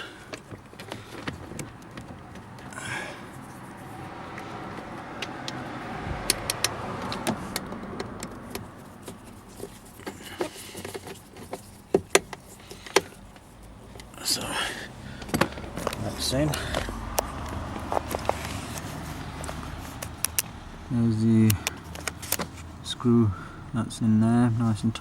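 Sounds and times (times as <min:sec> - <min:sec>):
rustling: 0:08.4 - 0:14.4, 0:15.4 - 0:20.6
screwdriver driving screw into plastic: 0:20.0 - 0:20.5, 0:21.5 - 0:22.5
tool and panel clicks: 0:20.0 - 0:20.5, 0:21.4 - 0:22.5.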